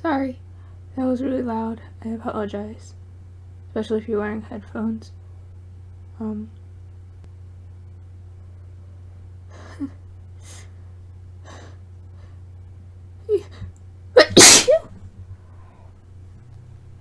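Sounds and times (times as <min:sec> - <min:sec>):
woman sneezing: 0:14.2 - 0:14.9.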